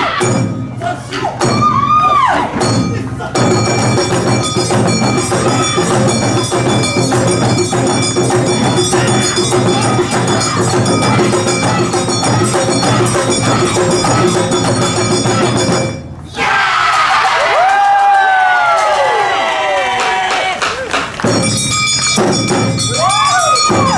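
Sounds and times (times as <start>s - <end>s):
crowd shouting and cheering: 0.0s - 23.9s
festival drums bells and clappers: 0.2s - 16.2s, 17.6s - 23.9s.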